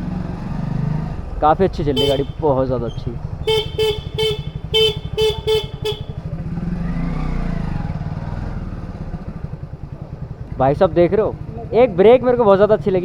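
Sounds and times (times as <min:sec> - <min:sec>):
motorcycle engine running: 0:00.0 - 0:13.0
vehicle passing: 0:00.0 - 0:13.0
vehicle horn beeps: 0:01.9 - 0:06.3.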